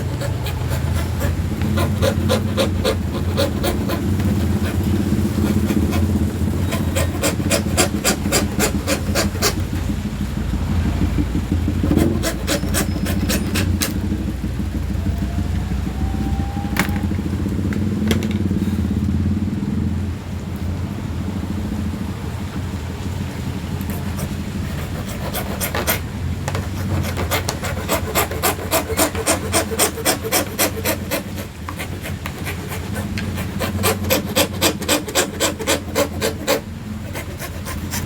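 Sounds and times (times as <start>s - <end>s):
hand saw cutting acrylic: 0.0s - 9.9s, 11.8s - 14.1s, 23.8s - 38.0s
low engine hum: 0.0s - 38.0s.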